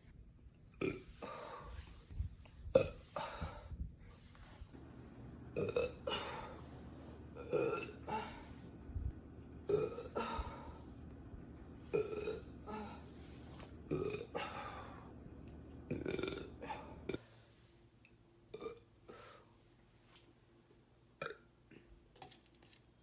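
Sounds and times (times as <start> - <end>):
woman burping: 5.6 - 6.6, 7.4 - 8.4, 9.7 - 10.8, 11.9 - 13.0, 13.9 - 14.8, 15.9 - 17.2.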